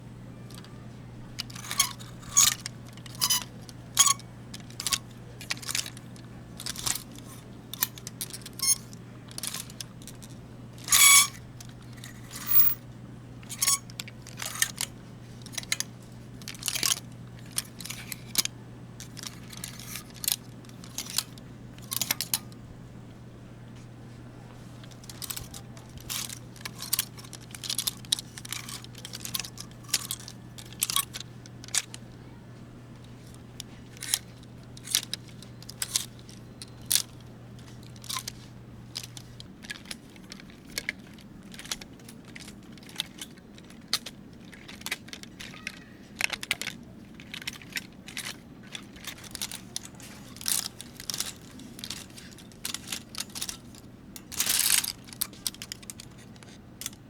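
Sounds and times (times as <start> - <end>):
low steady hum: 0.0 - 57.0
metal hangers scraping on rail: 1.4 - 6.0, 6.6 - 10.2, 10.8 - 12.8, 13.4 - 15.9, 24.8 - 32.0, 33.2 - 39.9, 48.1 - 57.0.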